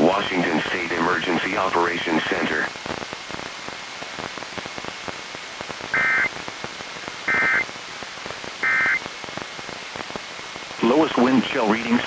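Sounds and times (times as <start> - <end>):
radio static hiss: 0.0 - 12.0
warbling digital data bursts: 6.0 - 6.3, 7.3 - 7.6, 8.6 - 9.0.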